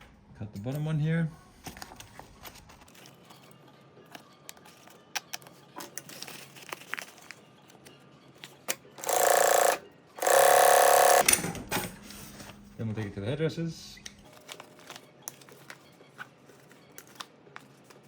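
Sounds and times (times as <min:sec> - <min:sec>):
sewing machine stitching: 0:09.0 - 0:11.4.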